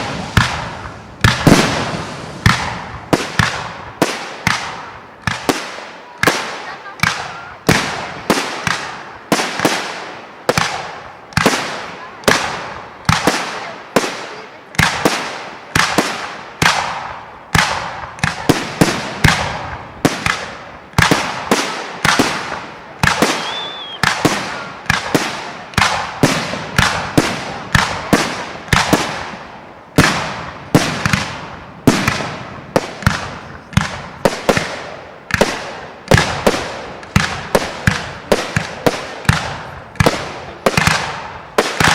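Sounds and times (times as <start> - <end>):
fireworks bursting: 0.0 - 41.9.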